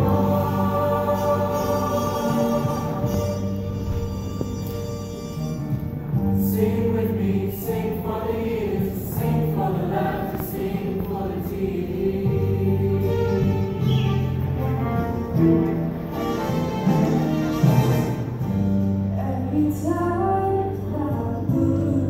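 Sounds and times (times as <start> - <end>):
choir singing: 0.0 - 4.0, 6.2 - 15.9
steady low tones: 0.0 - 16.1.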